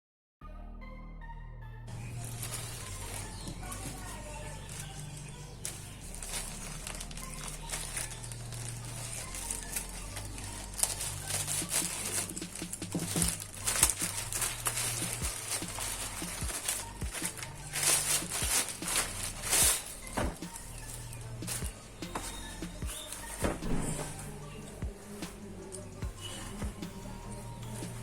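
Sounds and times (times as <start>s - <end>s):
background music: 0.4s - 28.0s
plastic packaging crinkling: 1.9s - 28.0s.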